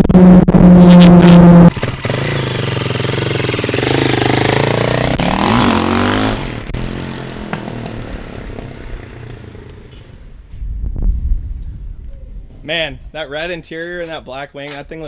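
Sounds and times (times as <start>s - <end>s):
car engine revving hard: 1.1s - 7.2s.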